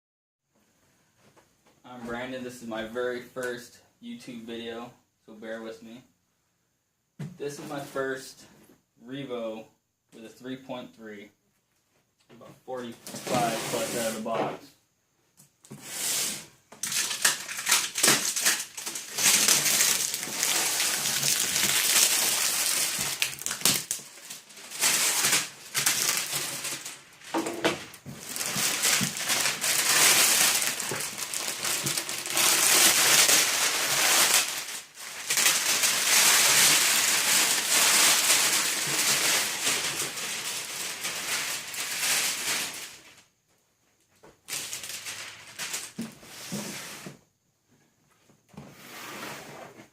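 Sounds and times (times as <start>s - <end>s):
packaging rustling and crinkling: 16.7s - 43.3s, 44.5s - 46.8s.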